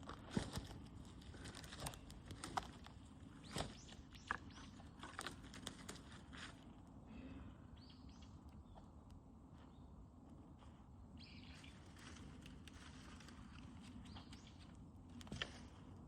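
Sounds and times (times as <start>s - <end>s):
bird chirps: 7.8s - 8.9s, 11.2s - 11.9s, 14.0s - 14.7s.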